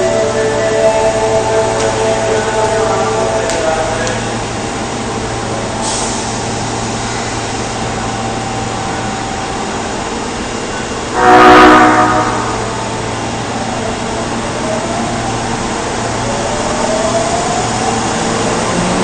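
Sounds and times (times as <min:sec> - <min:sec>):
train humming at platform: 0:00.0 - 0:19.0
train horn with abnormal tone: 0:11.1 - 0:13.0.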